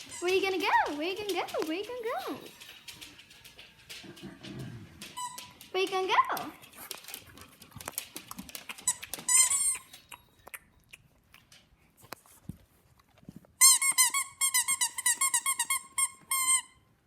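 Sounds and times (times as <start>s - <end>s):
squeaky toy squeaking: 0.0s - 1.5s, 5.2s - 5.6s, 8.8s - 10.3s, 13.6s - 16.8s.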